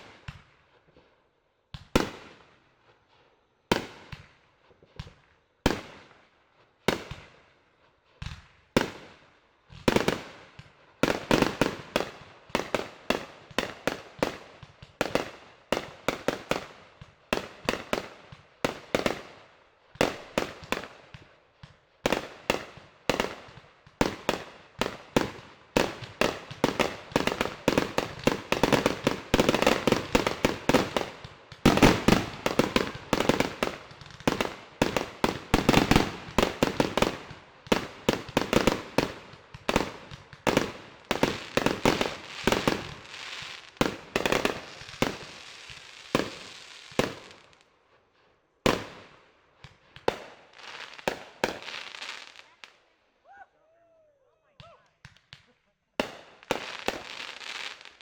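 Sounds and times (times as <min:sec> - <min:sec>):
fireworks bangs: 0:20.0 - 0:47.6.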